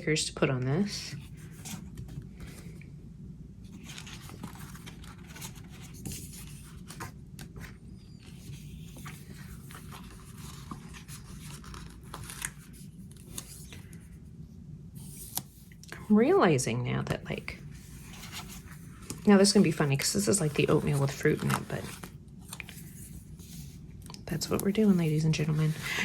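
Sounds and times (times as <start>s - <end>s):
low steady hum: 0.0s - 26.0s
paper rustling and crinkling: 3.7s - 14.1s, 17.6s - 26.0s.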